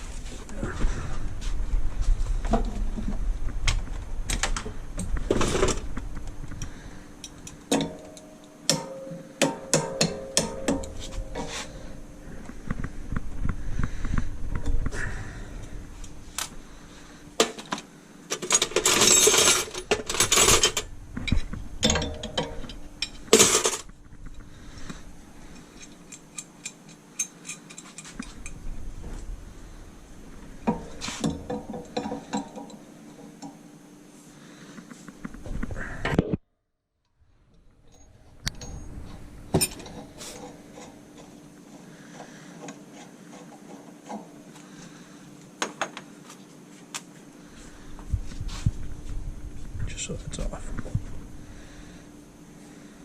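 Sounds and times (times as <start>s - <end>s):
sharp metal clank: 7.7s - 11.5s
metal tools clinking and rattling: 17.4s - 23.9s, 25.6s - 28.6s, 39.6s - 41.4s.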